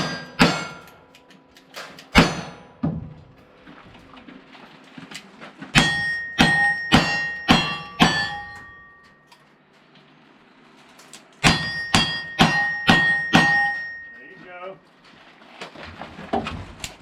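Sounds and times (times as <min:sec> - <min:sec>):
steel targets ringing: 0:00.0 - 0:01.1, 0:02.1 - 0:02.8, 0:05.8 - 0:09.5, 0:11.4 - 0:14.8.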